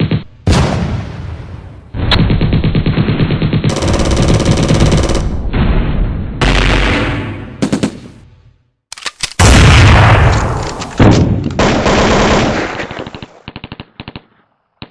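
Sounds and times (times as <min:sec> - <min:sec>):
loud gunfire blasts: 0:00.0 - 0:08.2, 0:09.4 - 0:13.9
rapid gunshots: 0:02.0 - 0:05.6, 0:06.4 - 0:08.0, 0:11.6 - 0:14.9
machine-gun burst: 0:02.3 - 0:05.4, 0:11.6 - 0:14.1.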